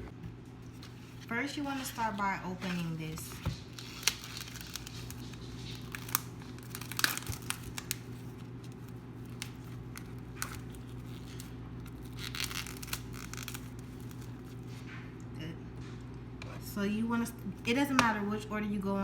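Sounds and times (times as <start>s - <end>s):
steady low hum: 0.0s - 19.0s
plastic packaging crinkling: 0.6s - 14.8s.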